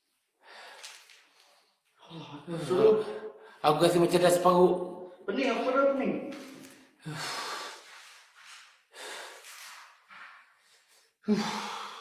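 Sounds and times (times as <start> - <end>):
man breathing heavily: 7.0 - 8.2, 8.9 - 12.0.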